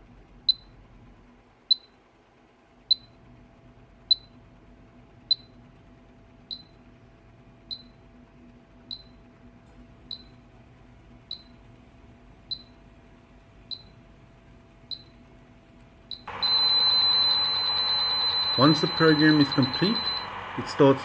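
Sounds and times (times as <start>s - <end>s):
faint steady hum: 0.0s - 21.0s
short high-pitched beeps: 16.1s - 21.0s.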